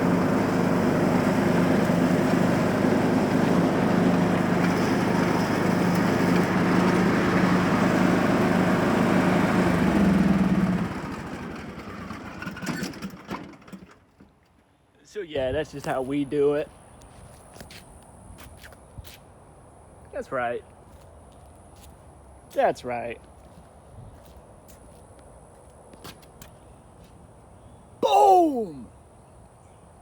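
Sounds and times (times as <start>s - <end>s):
lawn mower engine running: 0.0s - 14.6s.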